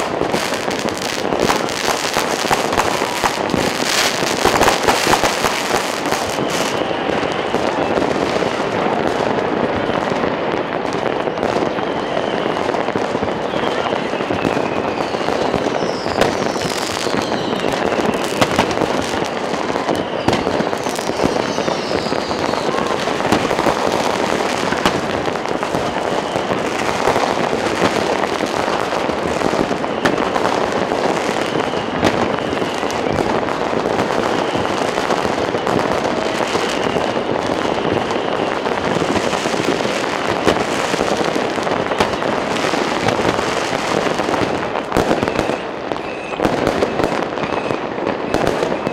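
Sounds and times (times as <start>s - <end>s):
crowd voices: 0.0s - 48.9s
firecrackers crackling and banging: 0.0s - 48.9s
whistling rockets: 0.0s - 48.9s.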